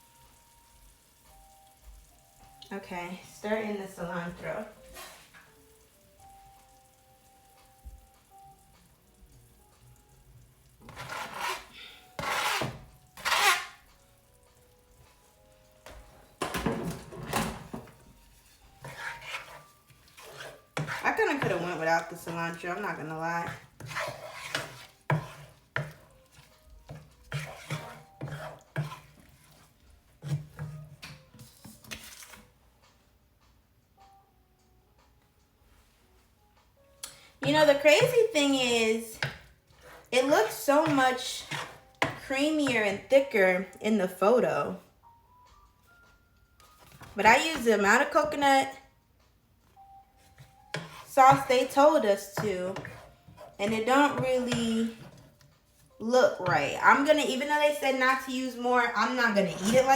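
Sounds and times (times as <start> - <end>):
spoon scraping food in a pan: 2.8 - 5.6, 10.7 - 14.1, 15.1 - 32.5, 37.0 - 44.2, 46.6 - 48.6, 50.2 - 59.9.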